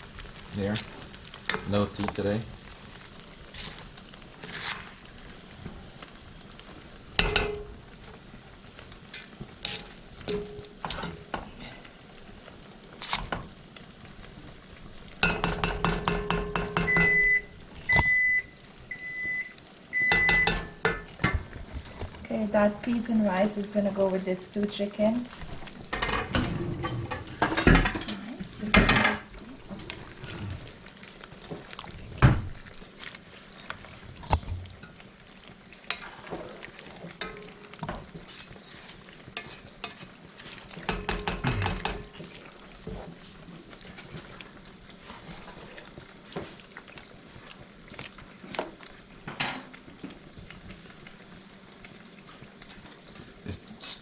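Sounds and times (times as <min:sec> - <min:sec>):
metal utensil stirring in pot: 0:08.9 - 0:11.5, 0:35.8 - 0:47.1.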